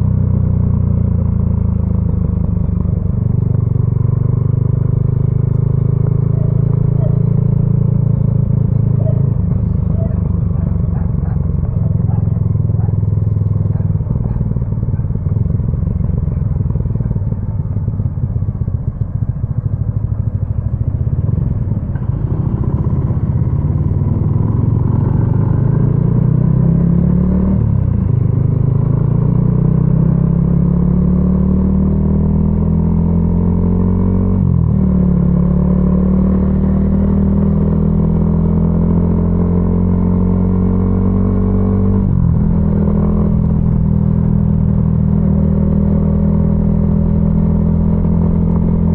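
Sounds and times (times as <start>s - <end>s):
motorcycle engine running unevenly: 0.0s - 29.1s, 39.8s - 48.9s
motorcycle engine accelerating: 0.0s - 48.9s.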